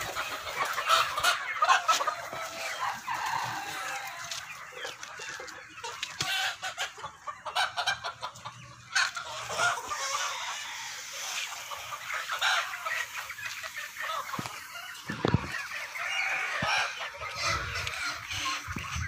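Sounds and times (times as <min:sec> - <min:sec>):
chickens clucking: 0:00.0 - 0:19.0.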